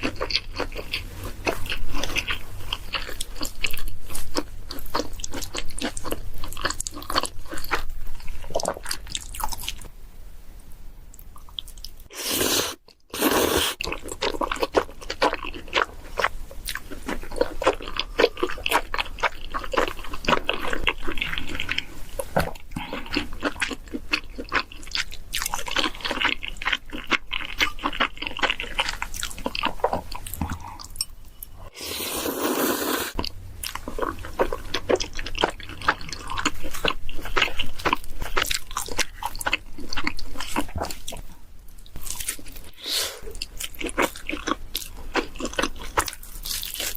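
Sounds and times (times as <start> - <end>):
crunchy chewing: 11.4 - 31.1, 32.2 - 46.9.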